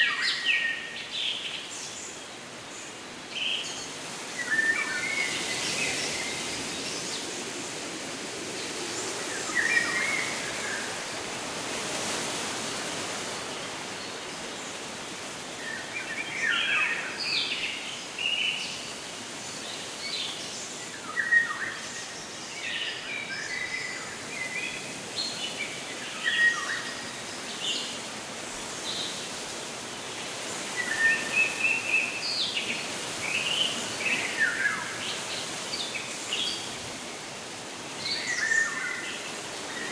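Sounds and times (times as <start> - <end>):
outdoor background hiss: 0.0 - 39.9.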